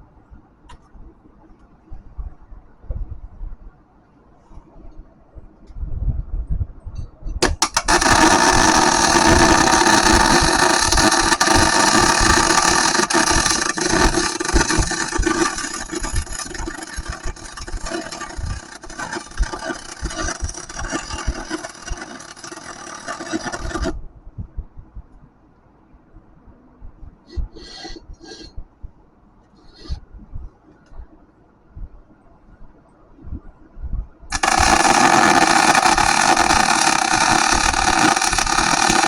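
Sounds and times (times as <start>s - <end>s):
welding arc crackling: 7.4s - 24.0s, 34.3s - 39.0s.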